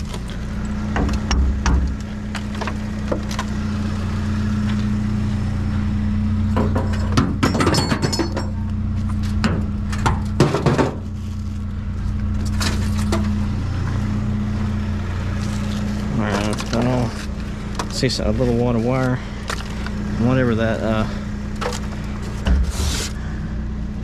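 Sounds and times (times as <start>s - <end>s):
engine idling: 0.0s - 24.0s
scrap metal clinking: 6.8s - 8.7s.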